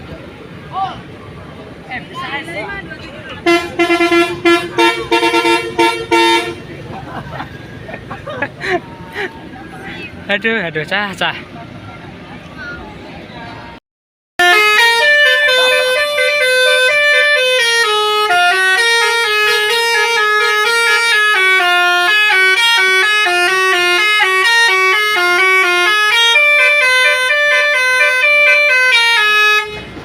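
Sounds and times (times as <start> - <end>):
bus musical horn melody: 3.4 - 6.8, 14.4 - 30.0.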